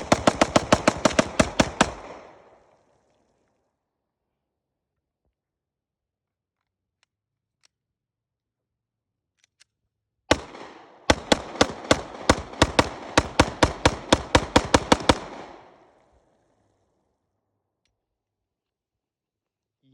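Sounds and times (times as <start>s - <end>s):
pistol shots: 0.0s - 2.7s, 10.3s - 15.9s
gunshot echoes: 10.3s - 15.7s.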